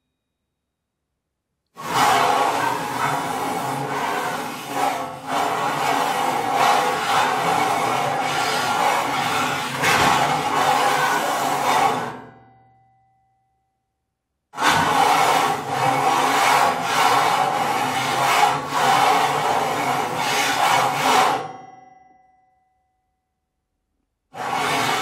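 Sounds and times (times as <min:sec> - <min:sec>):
steel sheet scraping on metal: 0:01.8 - 0:12.3, 0:14.6 - 0:21.6, 0:24.3 - 0:25.0
metallic ringing: 0:12.1 - 0:14.2, 0:21.3 - 0:23.5.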